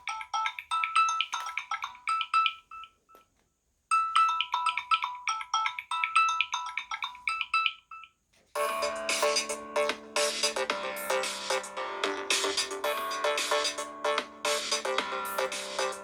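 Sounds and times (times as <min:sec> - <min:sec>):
fuller electronic ringtone: 0:00.0 - 0:03.2, 0:03.9 - 0:16.0.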